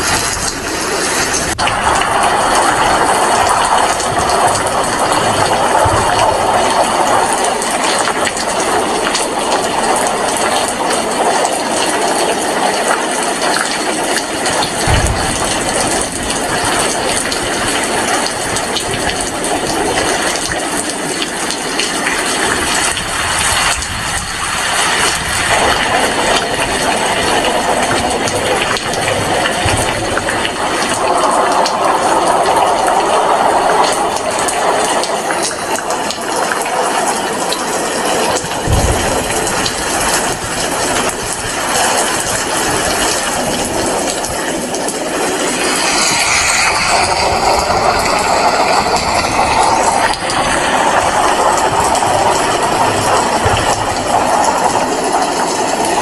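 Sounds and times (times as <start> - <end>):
steady rain falling: 0.0 - 56.0
low thump: 14.7 - 17.3, 38.6 - 39.9, 53.4 - 54.3.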